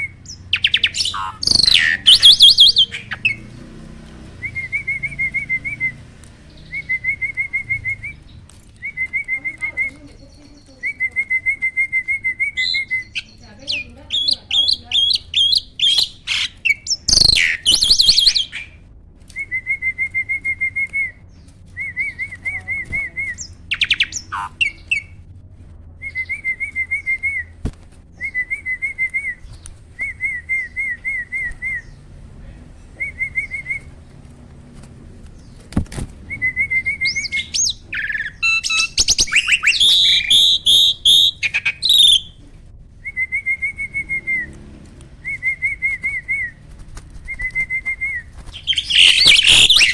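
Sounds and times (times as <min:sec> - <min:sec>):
starling chattering: 0:00.0 - 0:03.6, 0:12.6 - 0:18.7, 0:23.2 - 0:25.0, 0:37.0 - 0:42.3, 0:48.5 - 0:49.9
starling singing: 0:00.0 - 0:18.8, 0:21.8 - 0:25.2, 0:28.2 - 0:34.2, 0:36.3 - 0:42.4, 0:47.3 - 0:49.9.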